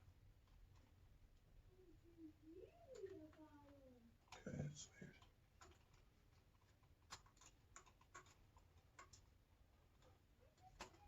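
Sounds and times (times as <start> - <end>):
light clicks of small parts: 2.9 - 11.0.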